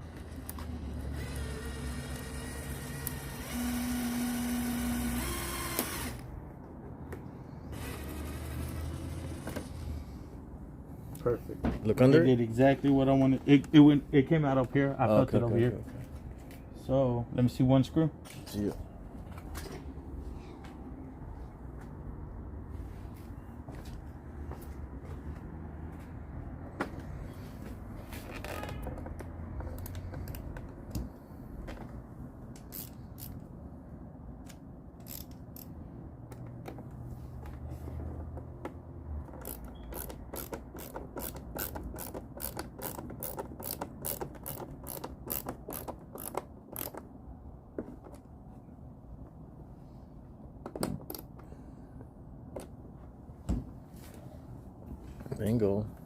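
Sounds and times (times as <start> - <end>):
ratcheting hand tool clicking: 32.6 - 33.4, 34.5 - 35.7, 39.4 - 47.0.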